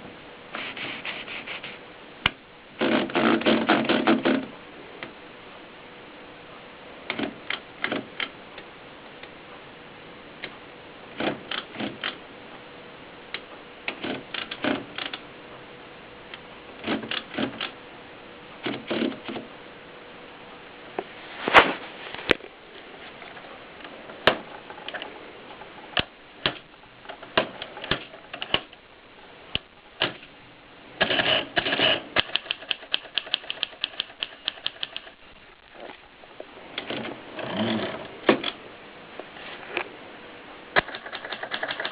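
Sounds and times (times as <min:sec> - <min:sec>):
typewriter keys clacking: 0:31.1 - 0:35.2, 0:40.8 - 0:41.9.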